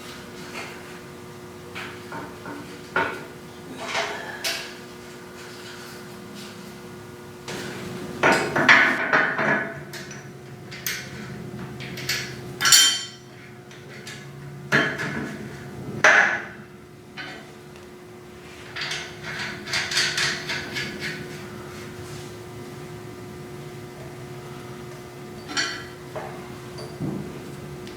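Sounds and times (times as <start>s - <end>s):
metal tools clanking: 8.2s - 13.2s, 25.4s - 26.0s.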